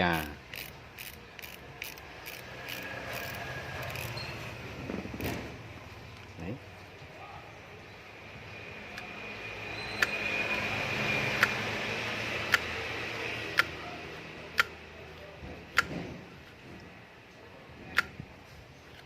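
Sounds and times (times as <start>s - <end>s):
fishing reel clicks: 0.0s - 4.2s.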